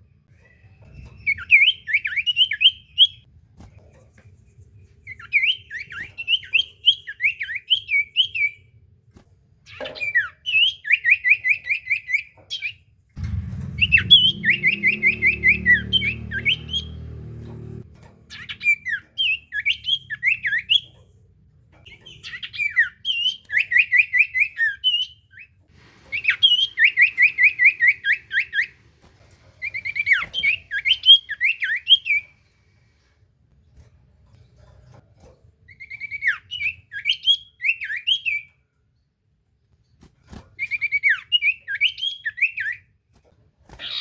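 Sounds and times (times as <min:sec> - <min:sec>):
bird singing repeated notes: 0:09.7 - 0:17.5, 0:18.2 - 0:21.0, 0:21.8 - 0:28.8, 0:29.6 - 0:32.3
low hum: 0:13.2 - 0:18.3.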